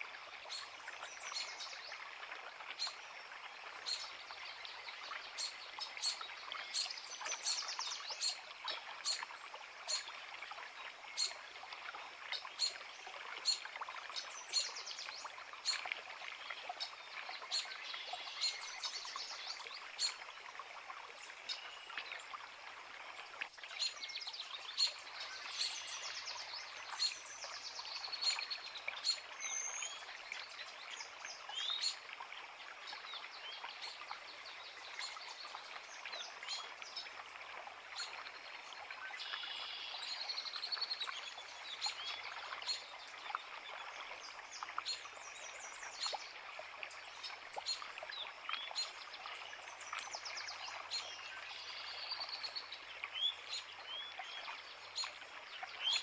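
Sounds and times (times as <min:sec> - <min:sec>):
songbirds singing: 0:23.3 - 0:37.2, 0:37.9 - 0:56.0.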